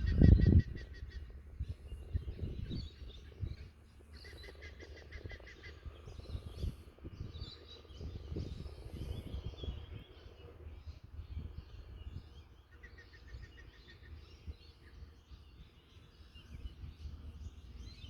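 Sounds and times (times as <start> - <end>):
wind on microphone: 0.0 - 12.5
small birds chirping: 0.0 - 18.0.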